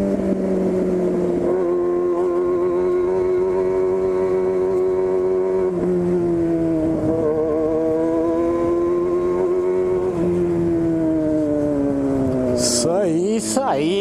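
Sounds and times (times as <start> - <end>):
motorcycle engine running loudly: 0.0 - 14.0.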